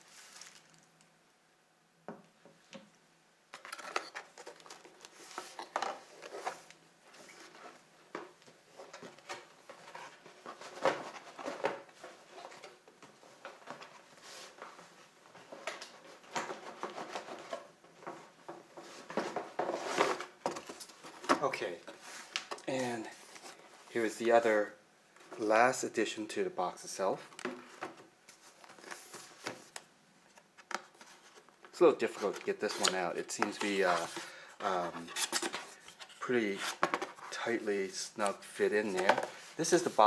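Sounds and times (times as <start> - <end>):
cardboard packaging rustling: 0.0 - 1.0, 3.5 - 24.2, 27.6 - 29.8, 30.6 - 37.9.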